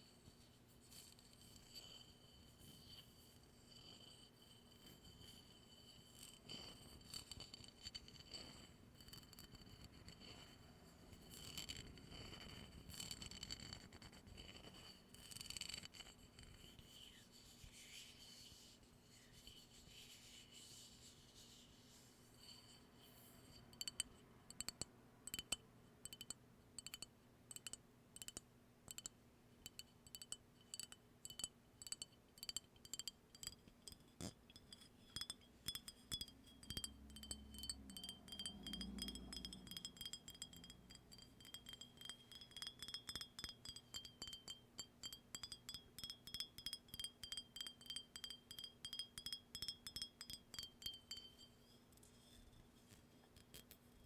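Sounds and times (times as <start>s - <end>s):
faint high ringing: 16.6s - 28.3s, 28.9s - 52.8s
light taps or clinks: 22.4s - 54.0s.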